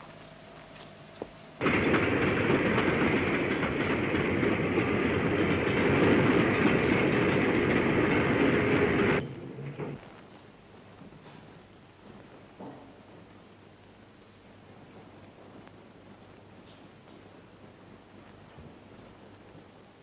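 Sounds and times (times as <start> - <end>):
steam train rail noise: 1.6 - 10.2.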